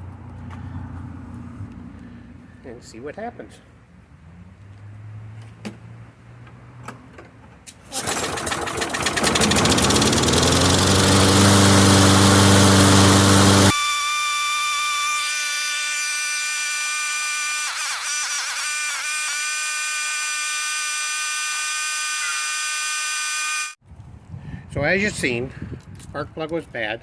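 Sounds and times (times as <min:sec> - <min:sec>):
mower engine running: 0:07.9 - 0:13.8
high whistling tones: 0:13.7 - 0:20.0.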